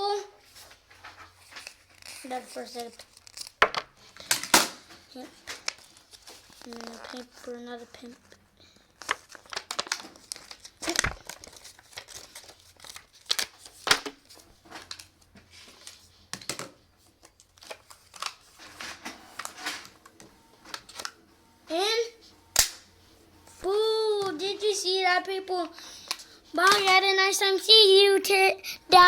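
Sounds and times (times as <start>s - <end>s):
paper rustling and crinkling: 0.4s - 21.2s, 23.6s - 28.1s.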